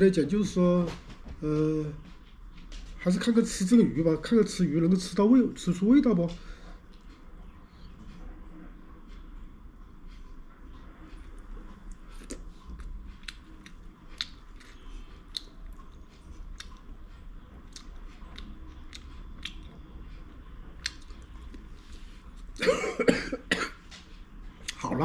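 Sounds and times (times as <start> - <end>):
person chewing: 11.2 - 23.1, 23.7 - 25.0
mouth clicks and smacks: 11.3 - 17.0, 17.6 - 20.2, 20.8 - 22.7, 24.6 - 25.0.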